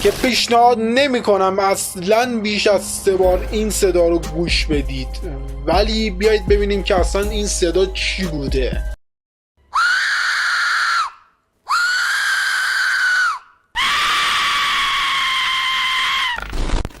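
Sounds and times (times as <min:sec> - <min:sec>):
high-pitched shriek: 0:09.7 - 0:16.8.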